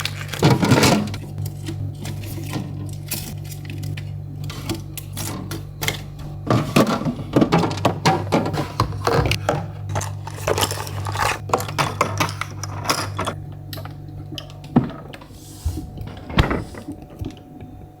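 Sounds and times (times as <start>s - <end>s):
low steady hum: 0.0s - 18.0s
drink containers clicking and knocking: 5.1s - 15.3s.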